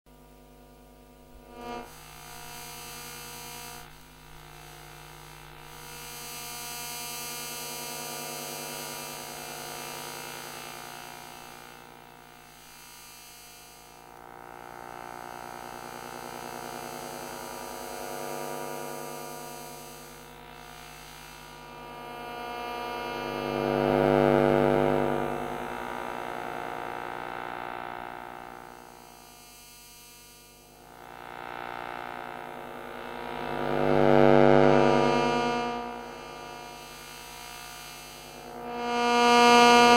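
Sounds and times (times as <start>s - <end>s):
electrical hum and buzz: 0.1s - 39.9s.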